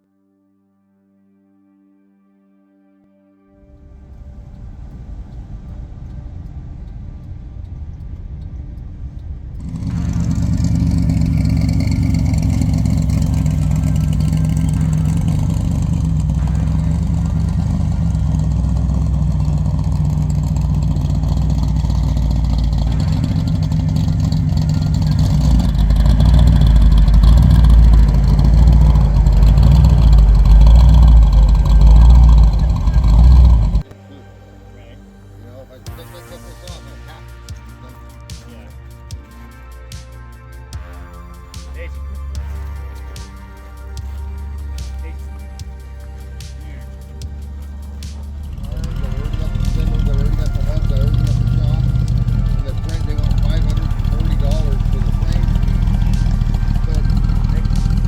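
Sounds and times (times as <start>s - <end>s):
car engine running: 4.4s - 33.8s, 41.1s - 58.0s.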